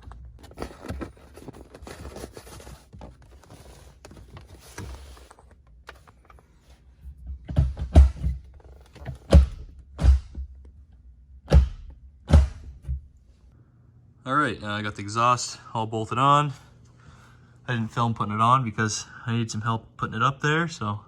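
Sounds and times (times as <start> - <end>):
faint rustling and handling: 0.0 - 7.4
dull thuds: 7.3 - 10.6, 11.5 - 13.1.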